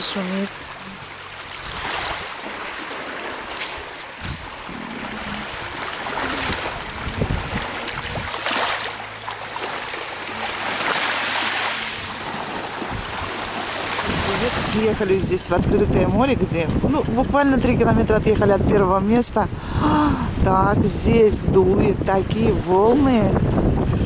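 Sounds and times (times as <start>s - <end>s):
sea waves breaking on shore: 0.0s - 24.0s
wind buffeting microphone: 1.0s - 8.8s, 12.0s - 24.0s.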